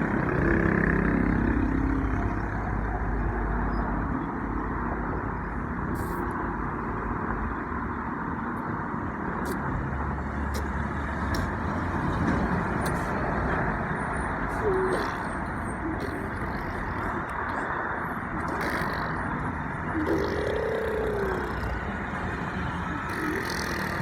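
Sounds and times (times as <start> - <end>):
low rumbling noise: 11.2 - 24.0.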